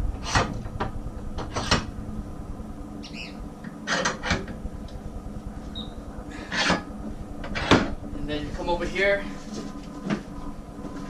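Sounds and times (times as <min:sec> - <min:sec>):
metal knocks and clatters: 0:00.1 - 0:01.9
brief squeak: 0:05.8 - 0:06.0.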